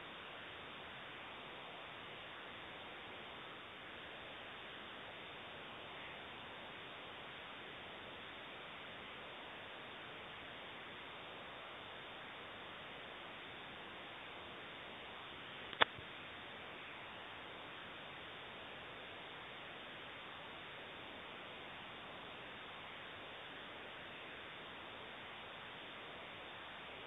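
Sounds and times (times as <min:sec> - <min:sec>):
steady background hiss: 0:00.0 - 0:27.0
sharp click: 0:15.7 - 0:16.0.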